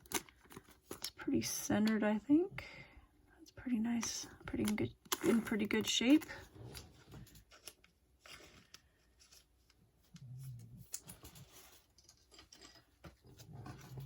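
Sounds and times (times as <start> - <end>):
trading card rustling in plastic sleeve: 0.0 - 1.6, 3.9 - 10.1.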